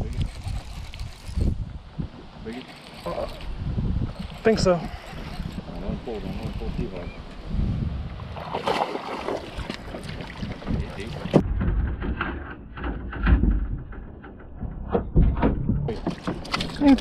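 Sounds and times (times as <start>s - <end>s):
wind buffeting microphone: 0.0s - 17.0s
knocks and clicks: 9.7s - 17.0s.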